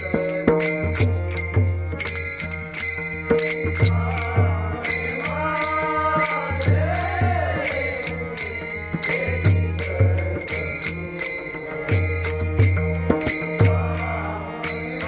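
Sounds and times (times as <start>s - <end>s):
hand cymbals clashing: 0.0s - 15.0s
man singing devotional song: 0.0s - 15.0s.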